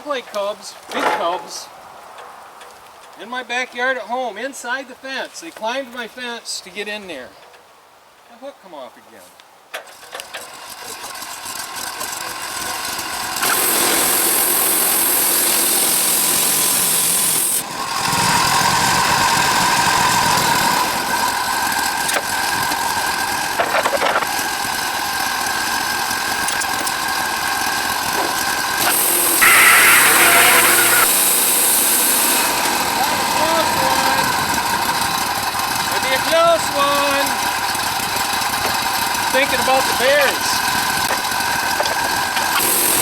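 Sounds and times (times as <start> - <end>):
sawmill engine running: 9.9 - 43.0
high hissing noise: 28.4 - 34.7.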